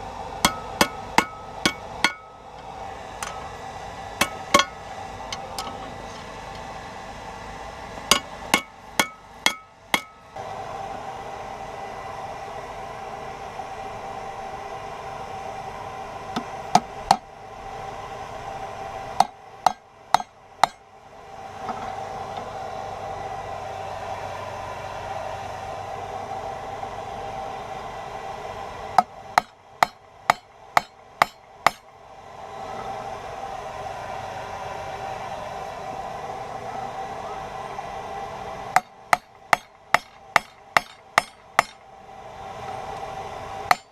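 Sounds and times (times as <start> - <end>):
forge humming: 0.0 - 43.9
hammer striking metal on anvil: 0.4 - 2.4, 3.2 - 3.5, 4.2 - 5.8, 8.1 - 10.2, 19.2 - 20.8, 29.0 - 31.9, 38.8 - 41.8.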